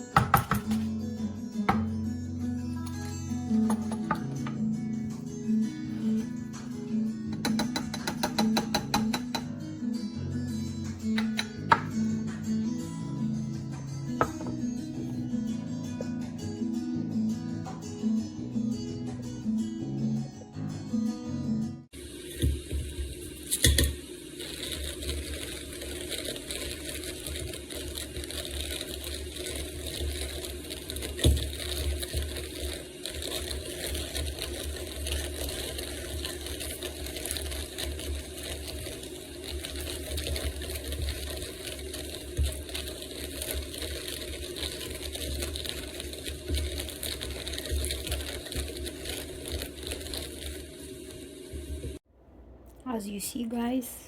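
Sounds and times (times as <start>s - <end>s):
coffee grinder running: 2.8s - 9.5s, 11.1s - 15.2s, 21.9s - 52.0s.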